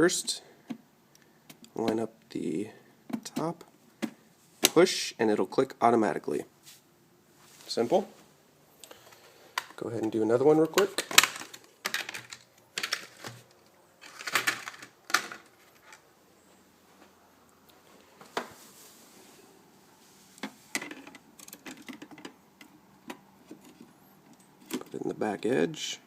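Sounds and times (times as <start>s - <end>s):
plastic clicks and rattles: 10.6s - 16.0s, 20.4s - 24.9s.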